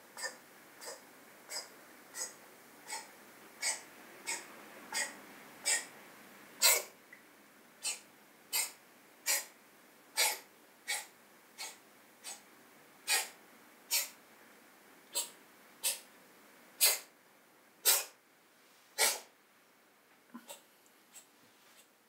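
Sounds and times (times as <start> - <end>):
cat sneezing snorts: 3.6 - 5.8, 6.6 - 6.9, 7.8 - 8.7, 9.3 - 9.5, 10.2 - 12.4, 13.1 - 13.3, 16.8 - 17.1, 17.8 - 18.2, 19.0 - 19.3.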